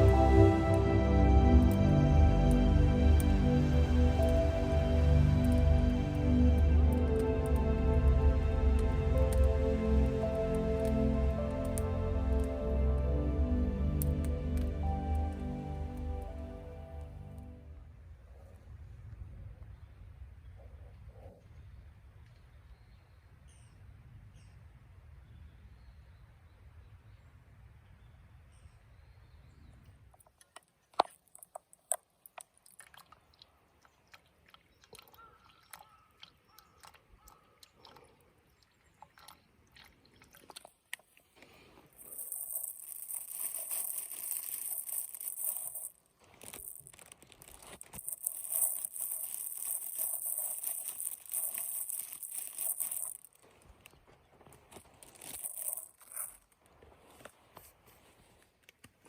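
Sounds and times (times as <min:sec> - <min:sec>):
loud crunching crinkling: 0:00.0 - 0:16.5, 0:39.1 - 0:59.0.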